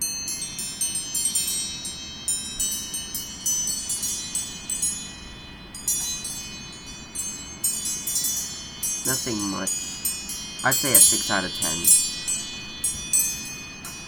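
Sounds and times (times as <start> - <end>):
phone ringtone chime notes: 9.0 - 14.0.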